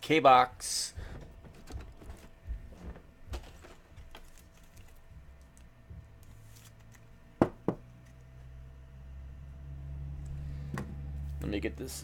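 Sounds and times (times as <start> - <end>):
cards handled on a table: 1.4 - 8.3
sharp knocks: 7.4 - 7.8.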